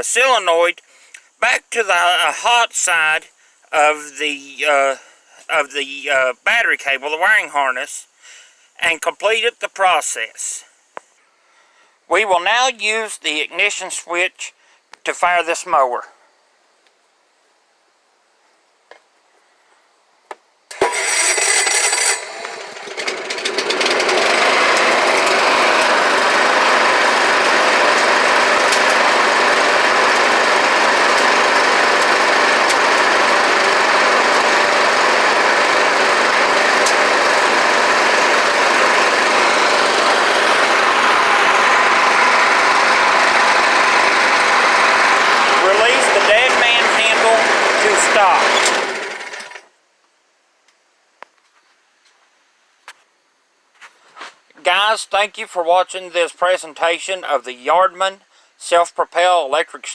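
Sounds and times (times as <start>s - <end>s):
lawn mower engine running: 20.7s - 49.7s
starter cranking: 20.7s - 49.7s.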